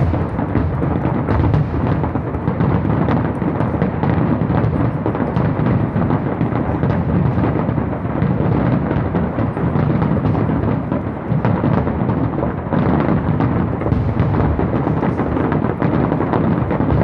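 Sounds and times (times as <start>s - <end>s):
low rumble of booms: 0.0s - 8.0s, 12.8s - 17.0s
fireworks crackling: 0.0s - 17.0s.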